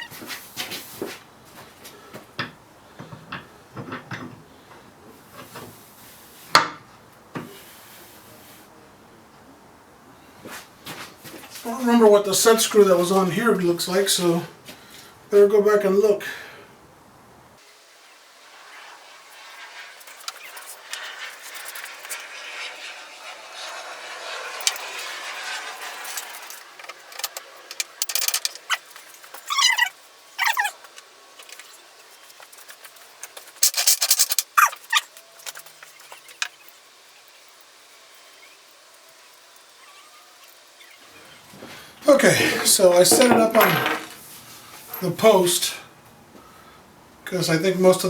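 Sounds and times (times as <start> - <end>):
hiss: 17.6 - 29.4, 31.4 - 34.6
small metal parts clicking: 26.9 - 29.8, 33.6 - 35.7
metal parts knocking and clattering: 27.2 - 29.5, 42.4 - 44.2.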